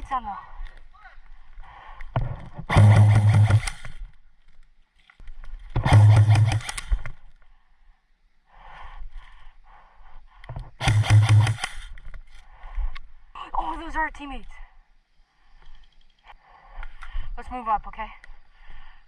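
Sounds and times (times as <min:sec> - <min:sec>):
electric airsoft rifle bursts: 0:02.7 - 0:04.0, 0:05.9 - 0:07.0, 0:10.8 - 0:11.9.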